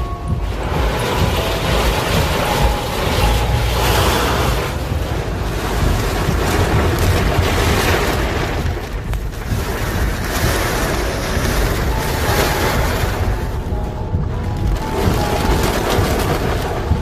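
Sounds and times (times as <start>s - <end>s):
heavy rain: 0.0s - 17.0s
wind rumble on microphone: 0.0s - 17.0s.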